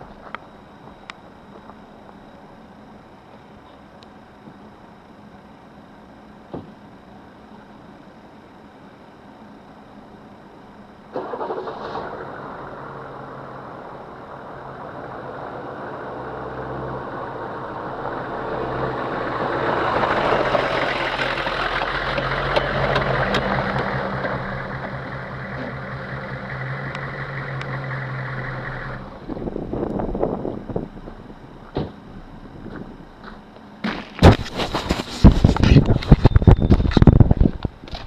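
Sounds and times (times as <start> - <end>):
engine running: 0.0 - 38.0.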